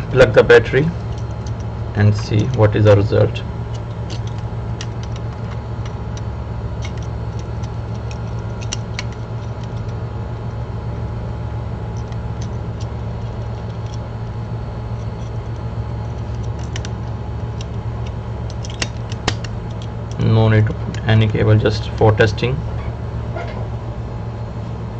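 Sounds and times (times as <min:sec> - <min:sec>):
low electrical hum: 0:00.0 - 0:24.9
small parts clicking: 0:01.0 - 0:02.6, 0:03.7 - 0:10.0, 0:11.9 - 0:20.3.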